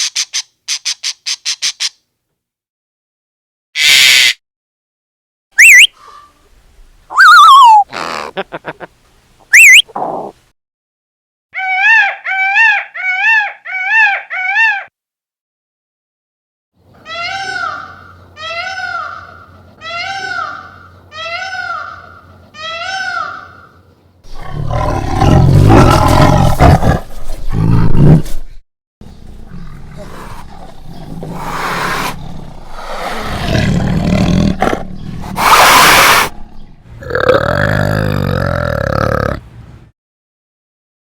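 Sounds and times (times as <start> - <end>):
deep rough animal calls: 29.4 - 39.4.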